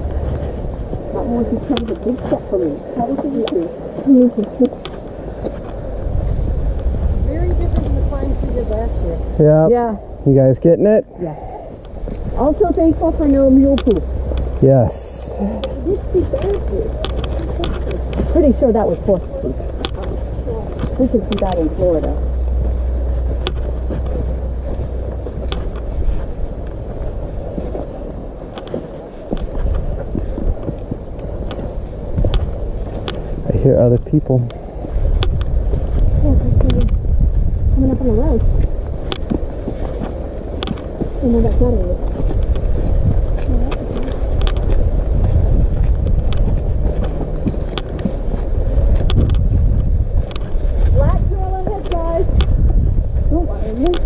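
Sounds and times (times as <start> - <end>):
wind buffeting microphone: 0.0 - 54.0
boots stepping on rock: 38.4 - 52.8.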